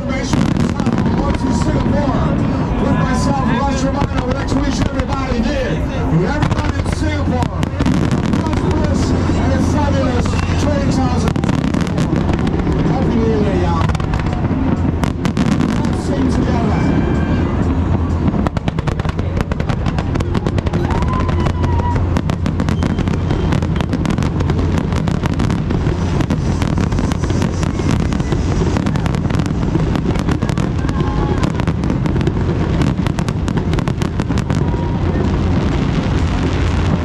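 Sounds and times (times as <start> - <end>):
fireworks bangs and crackles: 0.0 - 37.0.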